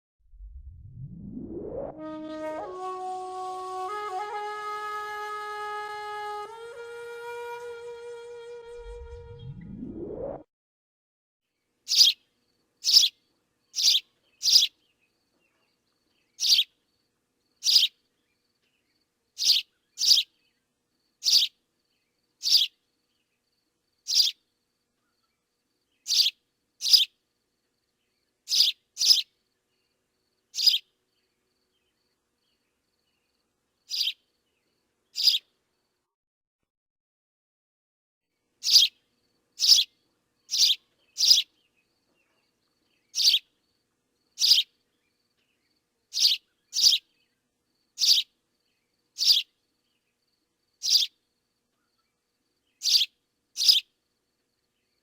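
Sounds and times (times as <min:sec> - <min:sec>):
sparrow chirping: 0:11.9 - 0:12.2, 0:12.8 - 0:15.0, 0:16.2 - 0:16.7, 0:17.6 - 0:18.0, 0:19.4 - 0:20.4, 0:21.2 - 0:21.6, 0:22.4 - 0:22.8, 0:24.1 - 0:24.4, 0:26.0 - 0:27.1, 0:28.5 - 0:29.3, 0:30.6 - 0:30.9, 0:33.9 - 0:34.2, 0:35.1 - 0:35.5, 0:38.6 - 0:39.0, 0:39.6 - 0:39.9, 0:40.5 - 0:42.4, 0:43.0 - 0:43.5, 0:44.4 - 0:44.8, 0:46.1 - 0:47.1, 0:48.0 - 0:48.3, 0:49.2 - 0:49.5, 0:50.8 - 0:51.1, 0:52.7 - 0:53.9.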